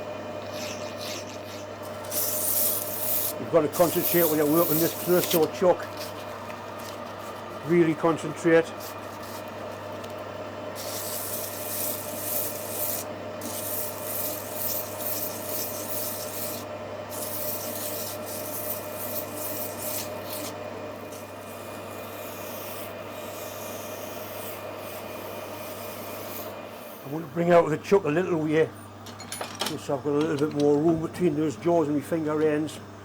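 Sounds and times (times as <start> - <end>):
metal lathe humming: 0.0 - 33.0
abrasive rasping on workpiece: 0.5 - 6.2, 10.8 - 26.6.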